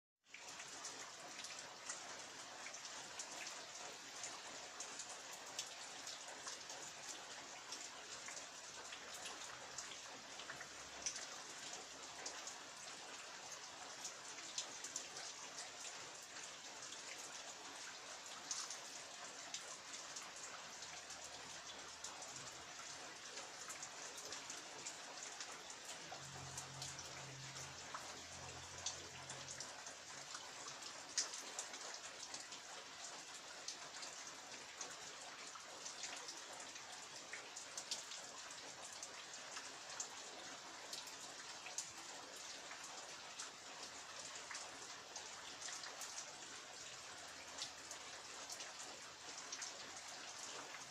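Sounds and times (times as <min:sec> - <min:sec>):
raindrops striking close by: 0:00.2 - 0:50.9
heavy rain falling: 0:18.5 - 0:34.2.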